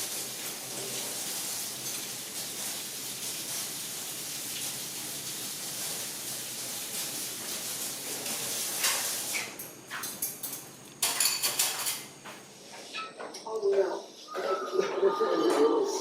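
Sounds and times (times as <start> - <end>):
water running from a tap: 0.0 - 12.1.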